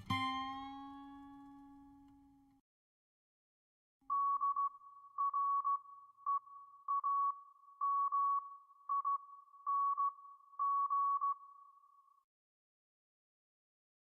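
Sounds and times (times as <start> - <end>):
morse code beeping: 4.1 - 11.8.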